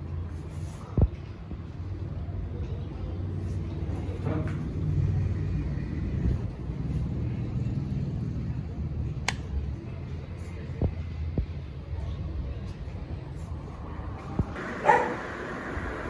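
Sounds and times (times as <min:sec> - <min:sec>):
sharp click: 0:09.2 - 0:09.5
ceiling fan running: 0:14.5 - 0:16.0.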